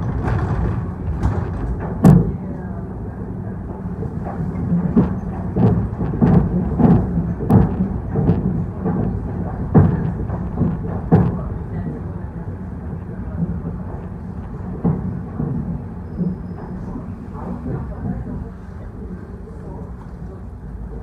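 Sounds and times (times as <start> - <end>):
wheel knocks over rail joints: 0.0 - 2.6
electric train rumbling: 0.0 - 21.0.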